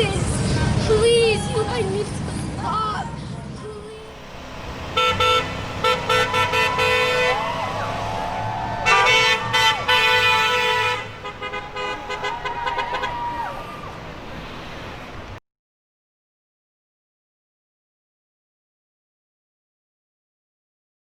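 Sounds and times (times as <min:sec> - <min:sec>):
car horns honking: 0:03.8 - 0:15.4.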